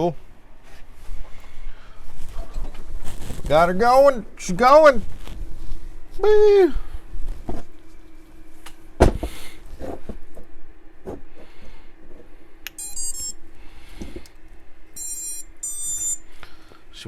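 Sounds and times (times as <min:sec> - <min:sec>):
faint steady hum: 0:00.0 - 0:17.0
high-pitched electronic beeps: 0:12.7 - 0:13.4, 0:15.0 - 0:16.2.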